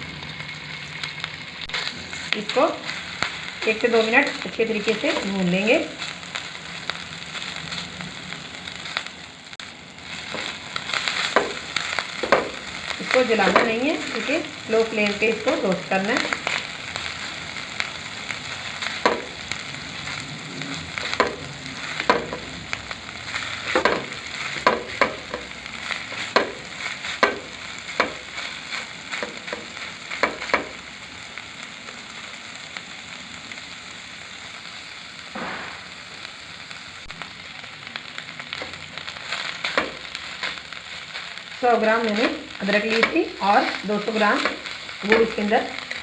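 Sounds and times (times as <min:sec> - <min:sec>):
paste sizzling in a pan: 0:00.0 - 0:46.0
spoon scraping and knocking pan: 0:10.2 - 0:16.6, 0:18.9 - 0:19.4, 0:21.0 - 0:22.5, 0:23.6 - 0:25.5, 0:26.1 - 0:28.4, 0:29.1 - 0:30.8, 0:44.4 - 0:45.3.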